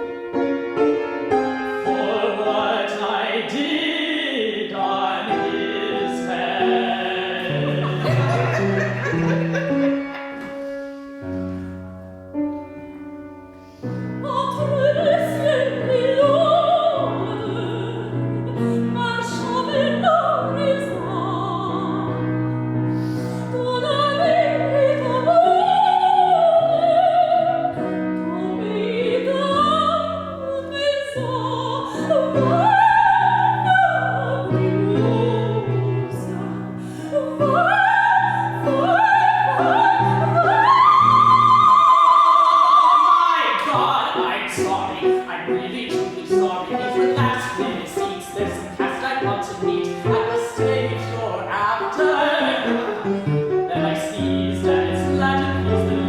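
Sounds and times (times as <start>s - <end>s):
piano chords: 0.0s - 56.0s
operatic solo singing: 1.9s - 10.1s.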